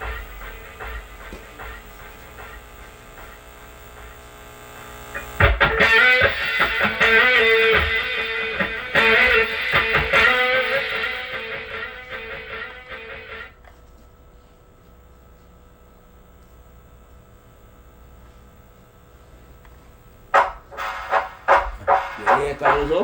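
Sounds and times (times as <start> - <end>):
distorted electric guitar music: 0.0 - 13.6, 20.4 - 23.0.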